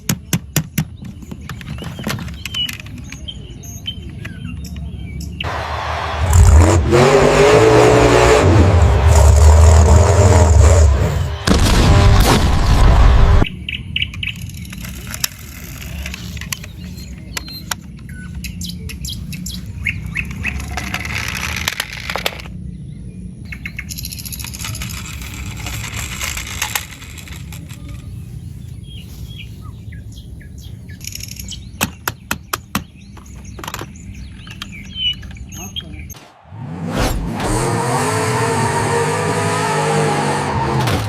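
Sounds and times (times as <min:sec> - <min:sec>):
birds chirping: 0:00.0 - 0:05.5, 0:13.4 - 0:26.0, 0:27.2 - 0:36.2.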